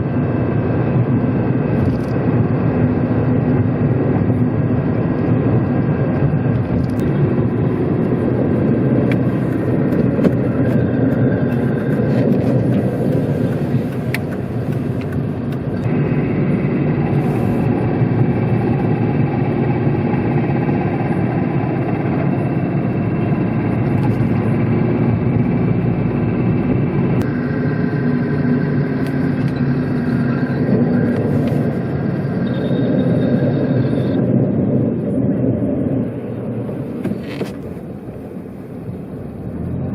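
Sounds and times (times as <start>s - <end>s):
car driving with road noise: 0.0s - 39.9s.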